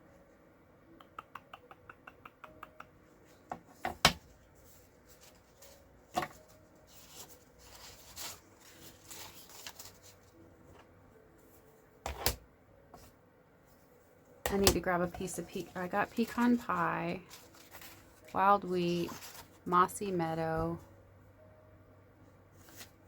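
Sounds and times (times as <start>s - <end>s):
paper rustling: 4.2s - 10.4s, 15.3s - 19.7s, 22.6s - 23.0s.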